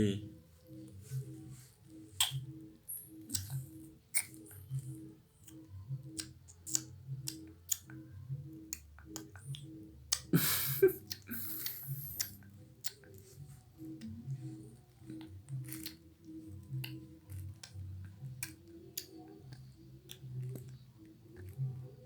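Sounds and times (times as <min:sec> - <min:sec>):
faint background music: 0:00.0 - 0:22.0
baby crunching a cracker: 0:14.5 - 0:20.8.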